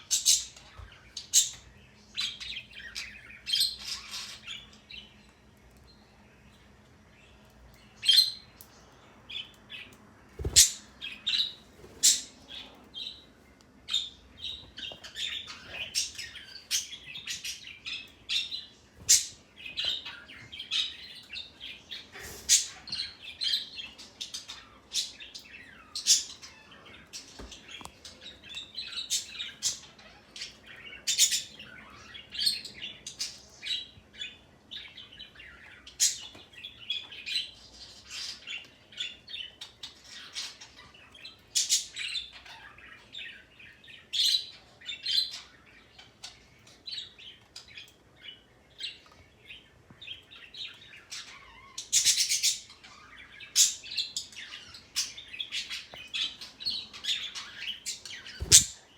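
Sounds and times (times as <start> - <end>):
parrot chirping and squawking: 3.6 - 4.8, 56.4 - 58.9.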